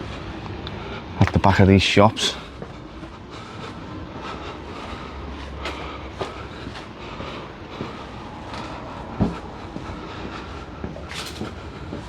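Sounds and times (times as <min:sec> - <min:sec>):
steady low rumble: 0:00.0 - 0:12.0
footsteps on hard ground: 0:02.6 - 0:12.0.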